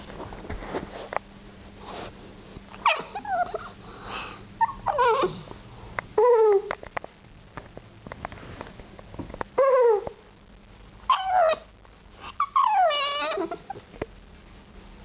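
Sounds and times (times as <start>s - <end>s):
puppy whining: 2.8s - 5.5s, 6.2s - 6.8s, 9.6s - 10.2s, 11.1s - 14.0s.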